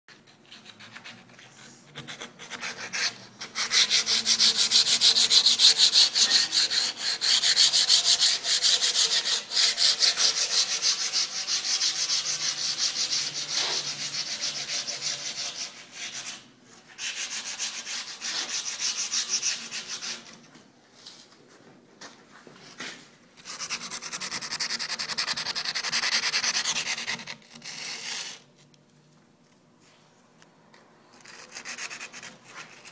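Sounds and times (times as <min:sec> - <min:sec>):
sanding strip scraping concrete: 0:02.0 - 0:20.3, 0:23.5 - 0:28.4.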